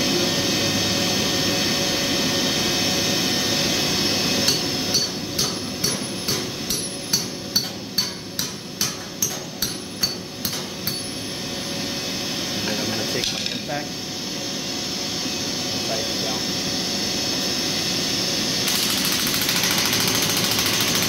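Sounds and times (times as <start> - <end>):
machine noise: 0.0 - 21.0
hammer striking metal bolt: 4.5 - 11.1.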